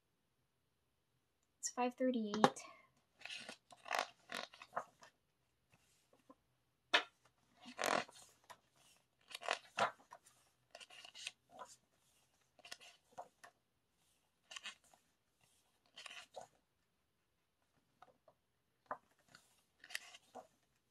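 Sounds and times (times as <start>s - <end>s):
paper rustling and crinkling: 3.2s - 5.2s, 7.5s - 16.6s, 18.8s - 20.9s.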